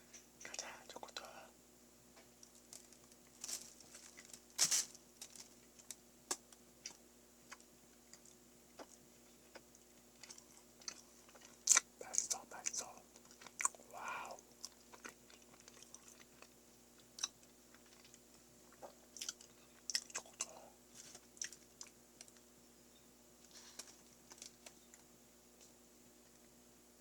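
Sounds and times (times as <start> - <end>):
faint steady hum: 0.0 - 27.0
person chewing with mouth clicks: 6.8 - 22.4.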